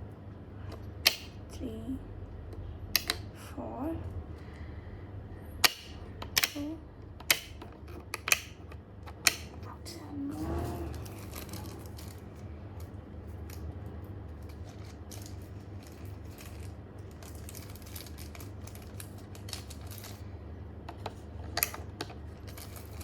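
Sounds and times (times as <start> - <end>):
metal balls clicking on magnets: 5.6 - 9.7.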